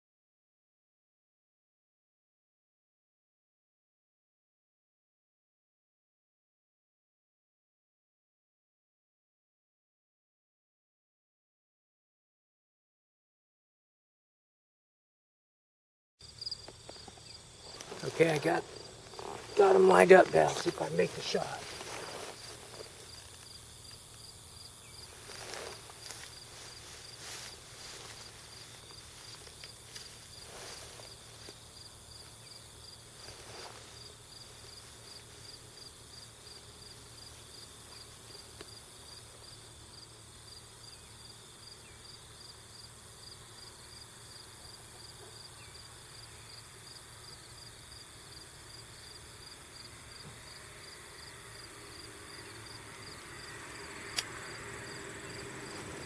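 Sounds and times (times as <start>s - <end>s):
insects chirping: 16.2s - 56.0s.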